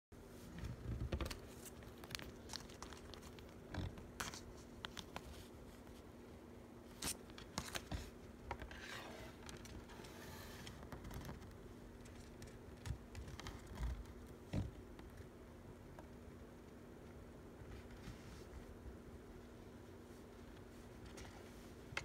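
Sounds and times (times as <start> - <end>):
packaging crinkling: 1.2 - 5.3.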